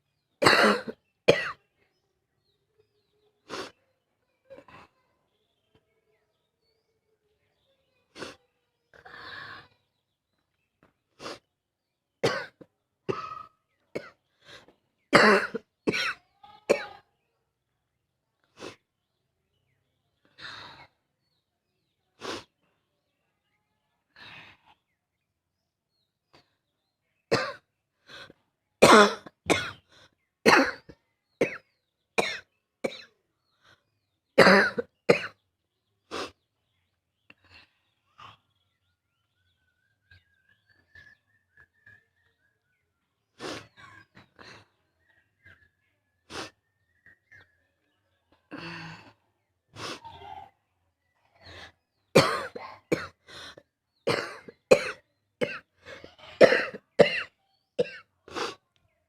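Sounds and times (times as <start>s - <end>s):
person barking cough: 34.4s - 35.3s, 52.2s - 53.2s, 56.4s - 58.0s.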